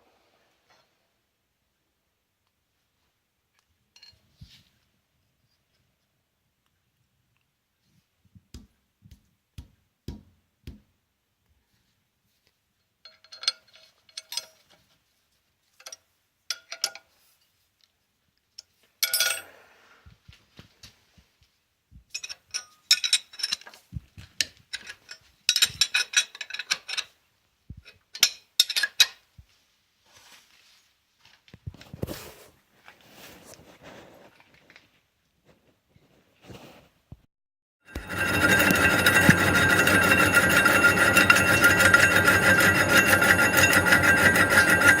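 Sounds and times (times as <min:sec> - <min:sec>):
metal tools clinking: 0:13.0 - 0:14.8, 0:19.0 - 0:19.5, 0:22.1 - 0:23.8, 0:37.9 - 0:45.0.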